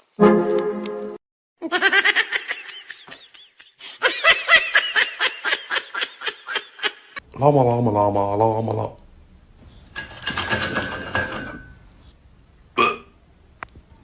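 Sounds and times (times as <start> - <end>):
high-pitched laughter: 1.6 - 7.2.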